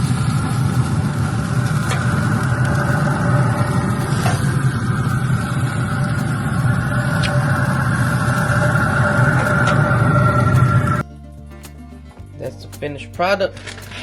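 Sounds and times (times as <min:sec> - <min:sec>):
loud mechanical hum: 0:00.0 - 0:11.0.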